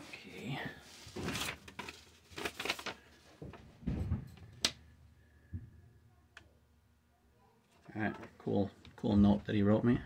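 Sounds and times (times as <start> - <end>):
packaging rustling: 0.0 - 3.6.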